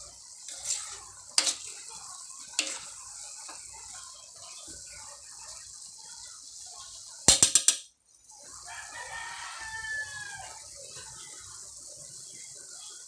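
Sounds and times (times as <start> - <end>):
rooster crowing: 8.7 - 10.6.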